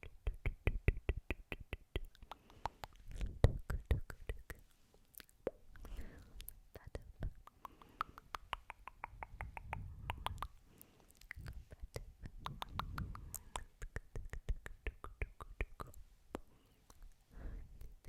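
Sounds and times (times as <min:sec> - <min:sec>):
soft breaths into microphone: 0:05.8 - 0:08.3, 0:09.2 - 0:13.8, 0:16.0 - 0:18.0.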